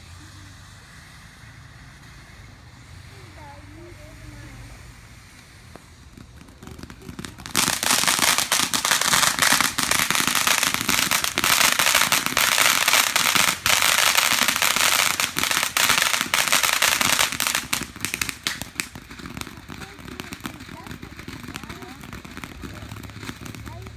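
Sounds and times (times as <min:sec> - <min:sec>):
fireworks crackling: 0:00.0 - 0:23.9.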